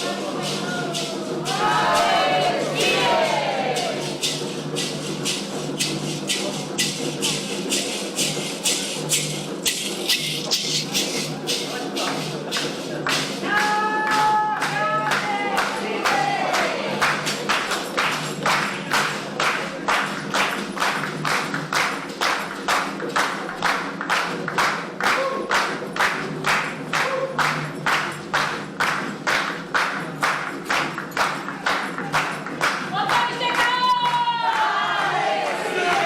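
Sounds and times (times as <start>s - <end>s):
percussive beat: 0.0s - 36.0s
group singing a chant: 0.4s - 4.4s, 14.6s - 17.4s, 34.4s - 36.0s.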